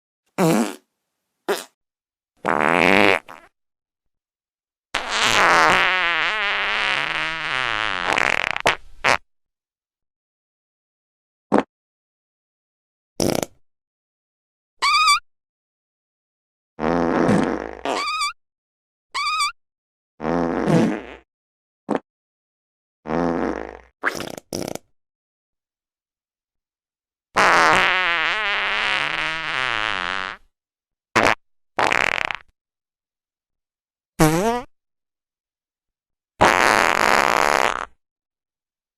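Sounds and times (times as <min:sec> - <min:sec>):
fart sound effects: 0:00.4 - 0:00.8, 0:01.5 - 0:01.8, 0:02.4 - 0:03.5, 0:05.0 - 0:09.2, 0:13.2 - 0:13.6, 0:16.8 - 0:18.4, 0:20.2 - 0:21.2, 0:23.1 - 0:24.8, 0:27.4 - 0:30.4, 0:31.2 - 0:32.5, 0:34.2 - 0:34.7, 0:36.4 - 0:38.0.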